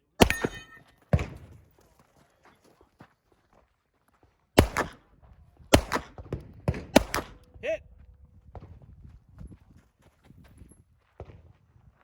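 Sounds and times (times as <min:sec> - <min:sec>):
gunshots with echo: 0:00.0 - 0:01.4, 0:04.6 - 0:05.0, 0:05.7 - 0:07.5.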